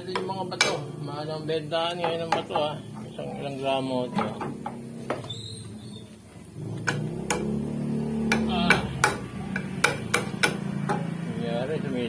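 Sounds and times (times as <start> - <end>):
metallic tool clicks and taps: 6.8 - 7.5, 8.2 - 11.1.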